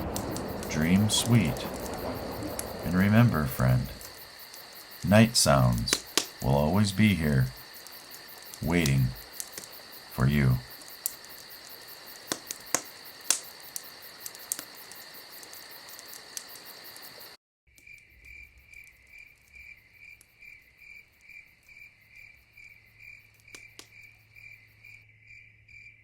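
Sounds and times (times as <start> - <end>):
wood fire crackling: 0.0 - 17.4, 18.0 - 24.2
crickets chirping rhythmically: 0.0 - 26.0
crickets trilling: 0.0 - 26.0.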